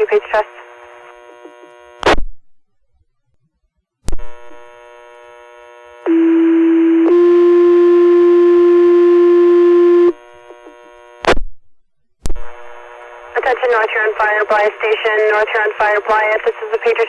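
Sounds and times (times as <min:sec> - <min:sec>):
two-tone pager tones: 0:06.1 - 0:10.2
radio squelch burst: 0:12.3 - 0:17.0.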